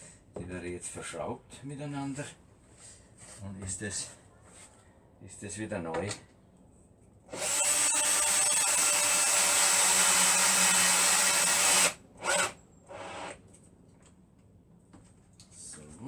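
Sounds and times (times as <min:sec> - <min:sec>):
power drill driving screw into wood: 0:07.3 - 0:13.4.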